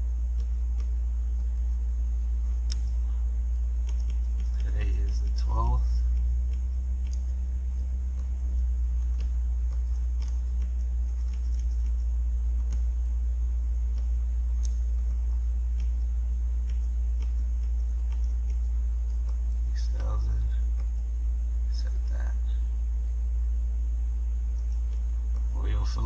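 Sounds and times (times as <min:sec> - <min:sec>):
car engine idling: 0:00.0 - 0:26.0
faint clicks: 0:02.5 - 0:03.0, 0:03.8 - 0:12.9, 0:13.9 - 0:21.1.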